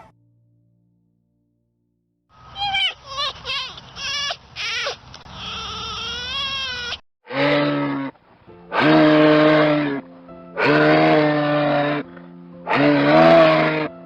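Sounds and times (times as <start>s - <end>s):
livestock bleating: 7.3s - 8.2s, 8.8s - 10.0s, 10.6s - 12.0s, 12.7s - 13.9s.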